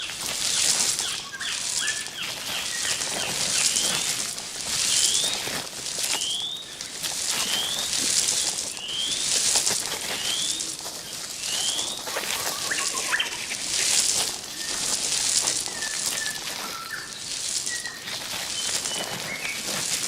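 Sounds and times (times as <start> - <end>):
high hiss: 0.0 - 20.0
birds brief notes: 10.0 - 19.7.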